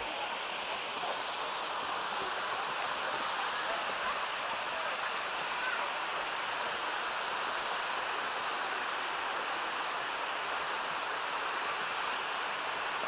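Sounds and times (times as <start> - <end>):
stream rushing over small waterfalls: 0.0 - 13.0.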